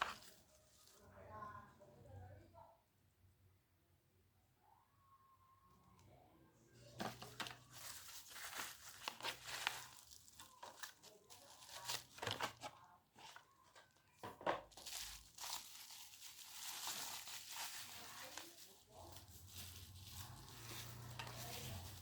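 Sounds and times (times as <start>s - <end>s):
packaging crinkling and tearing: 0.0s - 1.0s, 7.0s - 22.0s.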